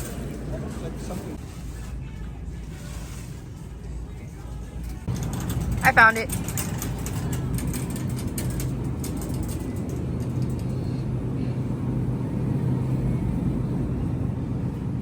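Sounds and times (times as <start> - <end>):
electrical hum: 3.6 - 15.0
low rumble: 5.0 - 15.0.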